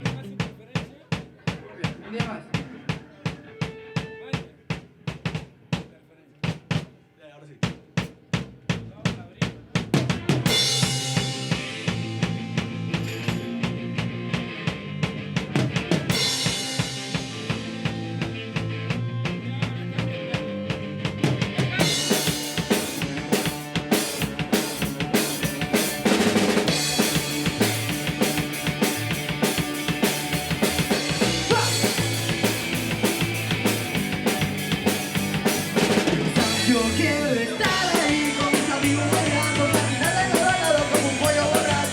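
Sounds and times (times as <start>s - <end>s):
rock band playing: 0.0s - 5.9s, 7.9s - 41.9s
drum kit beat: 0.0s - 41.9s
bass line: 8.4s - 41.9s.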